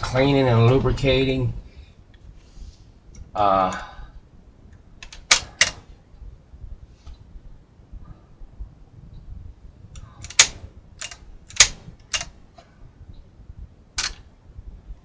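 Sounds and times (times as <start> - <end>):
cassette deck buttons clicking: 5.0 - 5.9, 10.0 - 12.4, 14.0 - 14.3.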